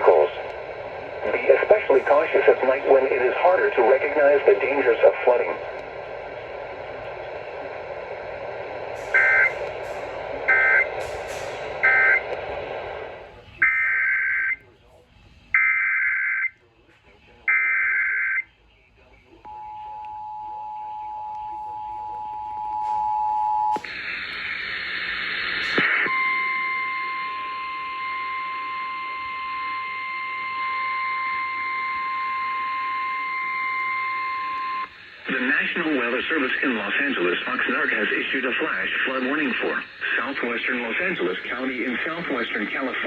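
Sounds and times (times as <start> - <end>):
radio static hiss: 0.0 - 15.5, 23.7 - 26.2, 34.4 - 43.0
click: 9.6 - 10.0.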